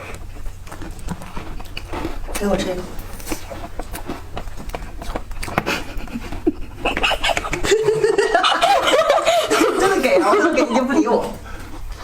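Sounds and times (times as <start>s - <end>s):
dog panting: 0.0s - 7.9s.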